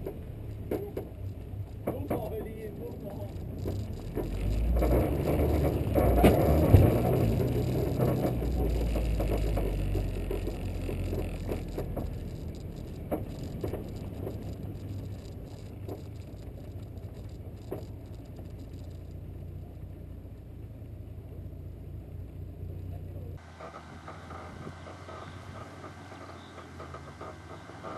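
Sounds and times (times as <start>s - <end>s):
sharp knocks or rattles: 0.0s - 19.0s, 23.4s - 27.9s
car engine and road noise: 0.0s - 27.9s.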